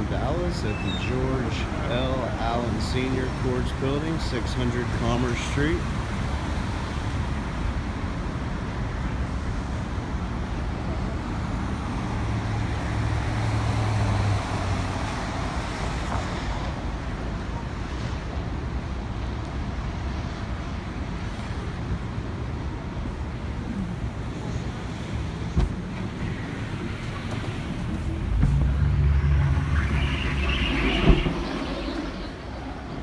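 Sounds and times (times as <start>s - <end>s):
city traffic rumble: 0.0s - 33.0s
low engine hum: 21.4s - 33.0s
wind buffeting microphone: 22.0s - 33.0s.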